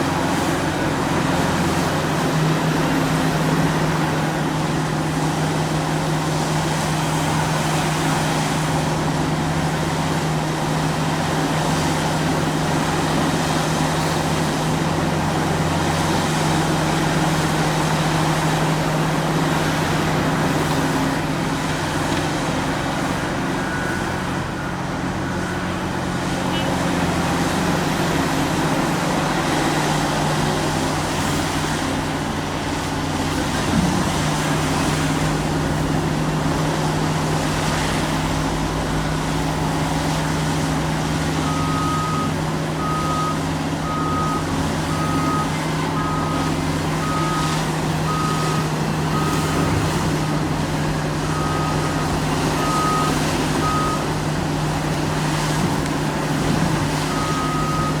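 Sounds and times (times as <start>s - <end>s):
heavy diesel machinery running: 0.0s - 58.0s
reversing alarm beeping: 22.8s - 27.6s, 41.3s - 54.8s, 56.4s - 58.0s.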